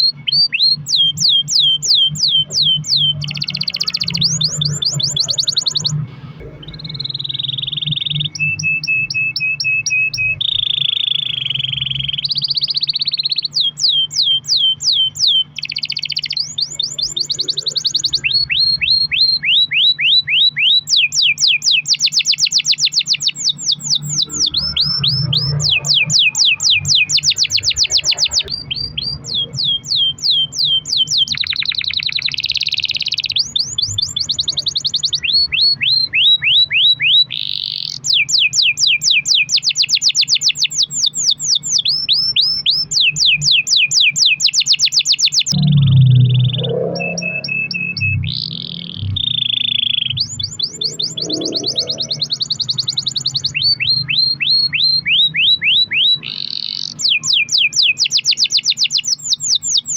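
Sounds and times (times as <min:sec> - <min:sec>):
canary singing trills: 0:00.0 - 0:59.9.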